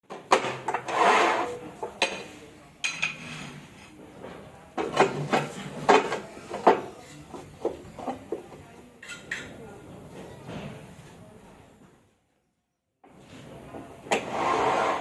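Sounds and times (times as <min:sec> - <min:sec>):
tile scraping: 0:00.7 - 0:01.6, 0:14.1 - 0:15.0.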